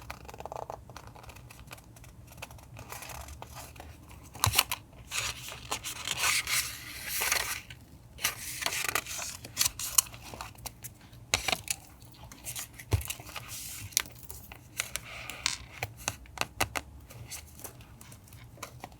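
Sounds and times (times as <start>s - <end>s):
paper rustling and rubbing: 0.2s - 10.6s.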